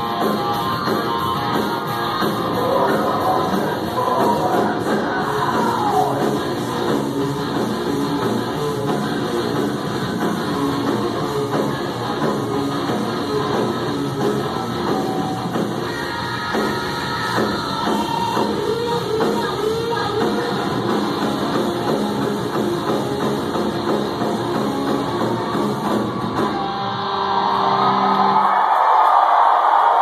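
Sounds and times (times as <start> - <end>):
live rock band playing: 0.0 - 28.4
distorted guitars: 0.0 - 28.6
drums: 0.0 - 30.0
person singing: 2.4 - 6.4.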